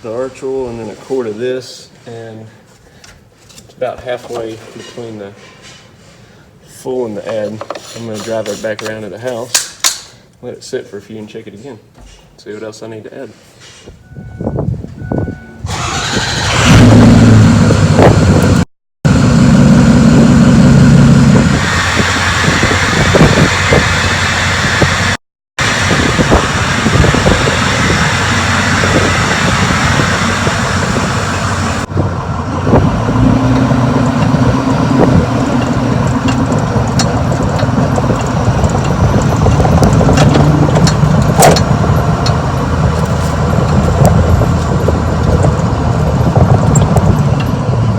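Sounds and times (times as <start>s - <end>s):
diesel truck engine running: 14.1s - 47.9s.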